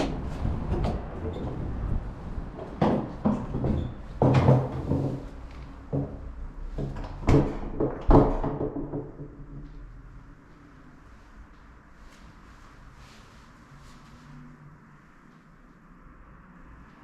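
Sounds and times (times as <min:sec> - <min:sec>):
sharp knocks and clunks: 0:02.6 - 0:09.8.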